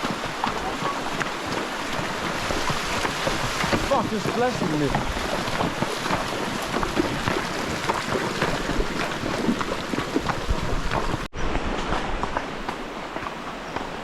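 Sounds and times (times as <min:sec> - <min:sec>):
horses splashing through water: 0:00.0 - 0:14.0
wind buffeting microphone: 0:06.6 - 0:13.8.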